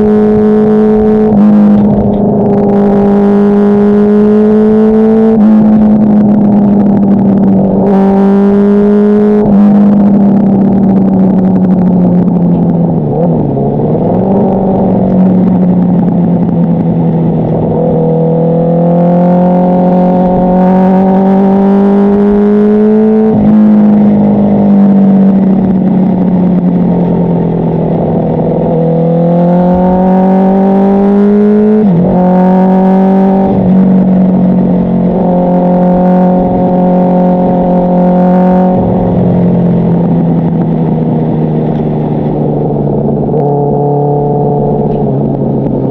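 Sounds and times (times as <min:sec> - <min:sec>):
motorcycle engine revving: 0:00.0 - 0:45.9.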